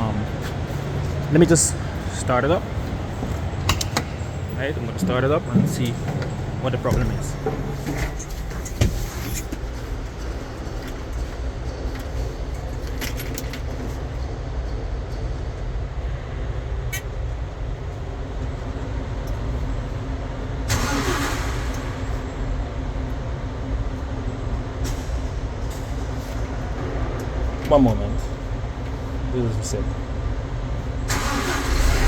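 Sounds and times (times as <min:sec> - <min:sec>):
forklift engine idling: 0:00.0 - 0:12.6, 0:17.4 - 0:26.8.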